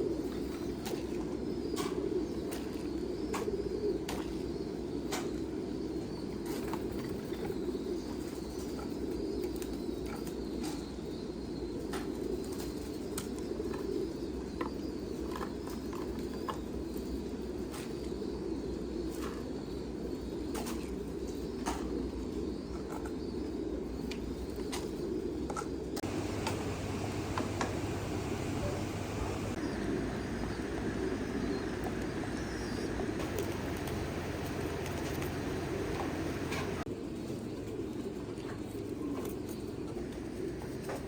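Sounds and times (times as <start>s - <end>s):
pigeons cooing: 0.0s - 11.0s, 21.7s - 36.9s, 39.1s - 41.0s
wings fluttering: 26.0s - 36.9s.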